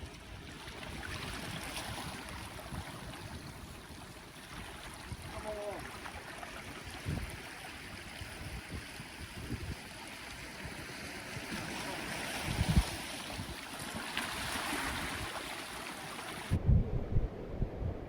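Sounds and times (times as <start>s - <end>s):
sea water washing on shore: 0.0s - 16.6s
wind buffeting microphone: 6.6s - 13.7s, 16.4s - 18.0s.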